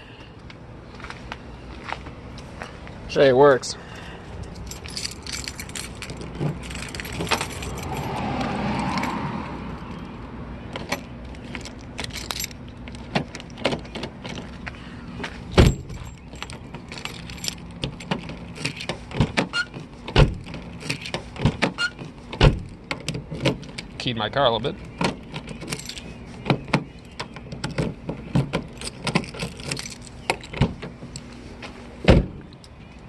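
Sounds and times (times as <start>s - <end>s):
keys jangling in a door lock: 4.4s - 8.2s, 10.7s - 14.6s, 15.6s - 19.7s, 20.3s - 22.0s, 25.0s - 27.9s, 28.5s - 31.3s.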